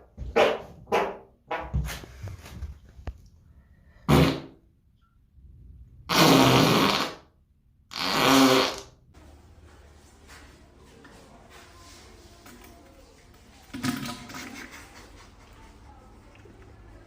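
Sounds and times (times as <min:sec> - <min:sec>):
farts: 0:04.1 - 0:04.6, 0:06.1 - 0:07.3, 0:07.9 - 0:09.0.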